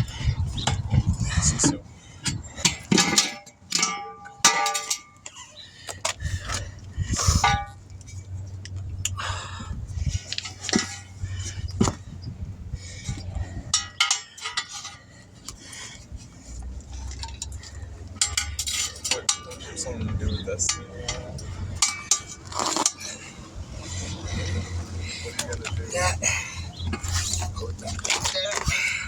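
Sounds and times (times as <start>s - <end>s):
metal tools clinking: 2.2s - 6.6s, 13.6s - 16.0s, 16.9s - 29.0s.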